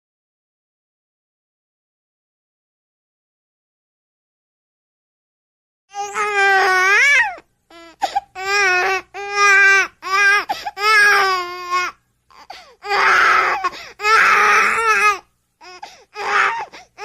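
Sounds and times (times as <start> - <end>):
baby crying: 5.9 - 17.0.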